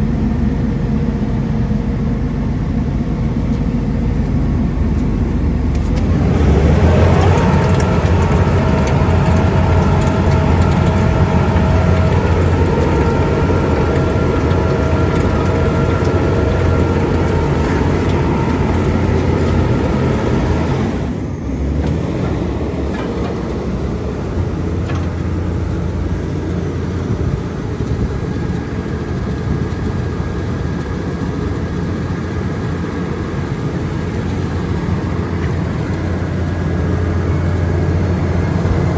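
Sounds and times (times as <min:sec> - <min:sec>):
diesel engine running: 0:00.0 - 0:38.9
machine whine: 0:00.0 - 0:38.9.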